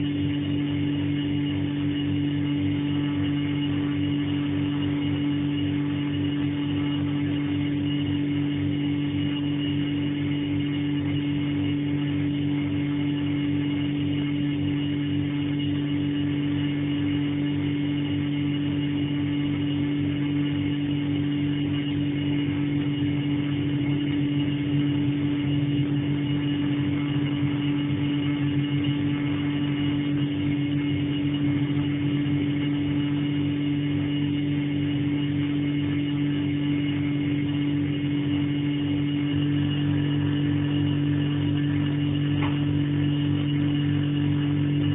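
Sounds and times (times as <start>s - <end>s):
refrigerator humming: 0.0s - 44.9s.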